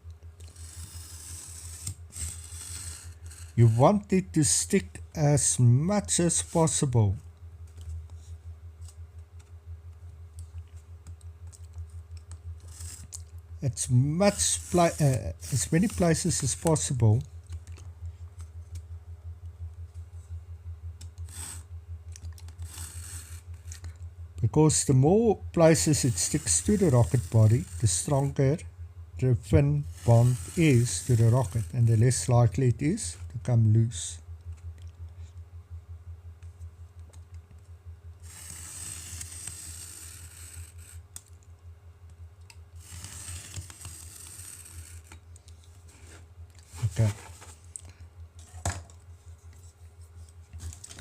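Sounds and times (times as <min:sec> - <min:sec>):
steady low hum: 0:00.0 - 0:51.0
craft knife scraping cut: 0:00.4 - 0:03.9, 0:12.6 - 0:13.2, 0:25.7 - 0:28.3, 0:29.9 - 0:31.8.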